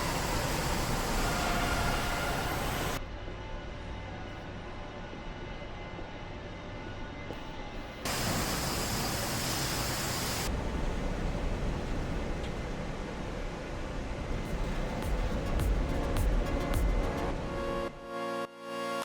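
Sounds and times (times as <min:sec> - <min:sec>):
factory machinery noise: 0:00.0 - 0:04.2, 0:07.3 - 0:17.9
loud hiss: 0:08.1 - 0:10.5.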